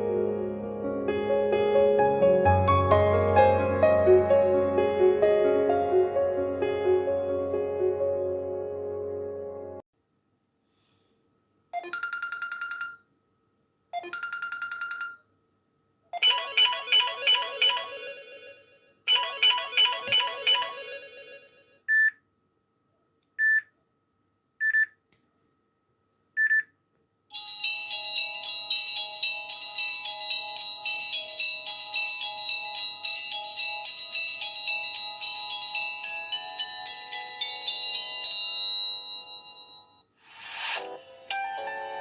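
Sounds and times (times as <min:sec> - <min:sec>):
bell-like ringtone: 0:11.8 - 0:13.0, 0:14.0 - 0:15.2, 0:16.2 - 0:21.8, 0:27.3 - 0:42.0
melodic ringtone phrase: 0:16.2 - 0:21.7, 0:27.3 - 0:39.9.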